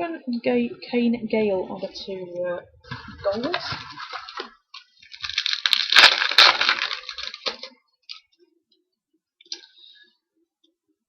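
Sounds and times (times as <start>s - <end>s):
wrapper crinkling and tearing: 3.2s - 8.2s.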